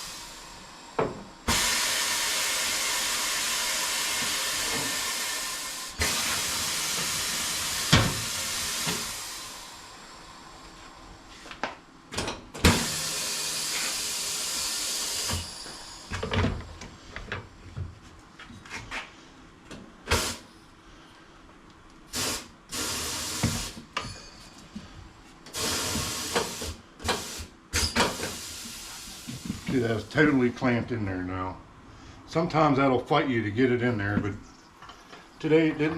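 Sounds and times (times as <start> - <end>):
compressed air hissing: 0.0 - 0.8, 1.4 - 10.0, 12.7 - 16.1, 20.1 - 20.5, 22.1 - 23.8, 25.5 - 29.8.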